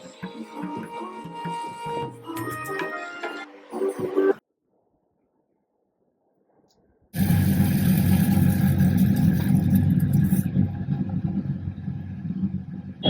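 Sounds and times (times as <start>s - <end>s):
vehicle engine running: 7.2s - 13.0s.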